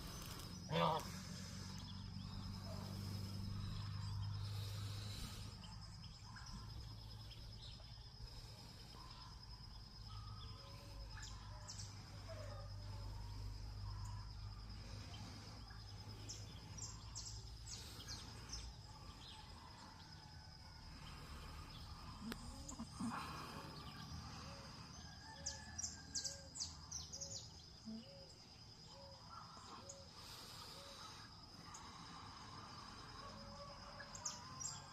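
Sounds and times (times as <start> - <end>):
birds chirping: 0.0 - 19.9.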